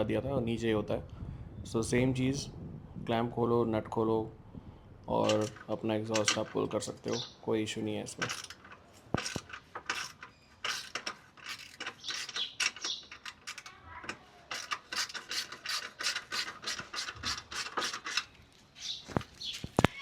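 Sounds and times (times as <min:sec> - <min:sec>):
ratchet wrench clicking: 0:05.2 - 0:06.5, 0:08.2 - 0:18.3.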